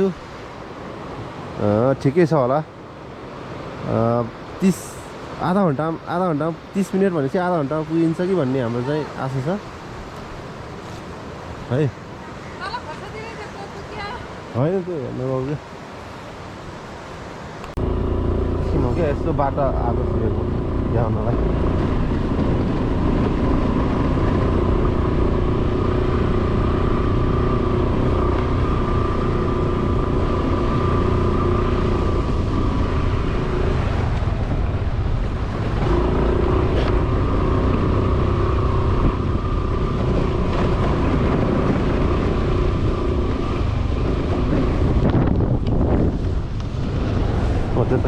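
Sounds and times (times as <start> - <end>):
motorcycle engine running: 17.8 - 34.0, 34.6 - 47.7.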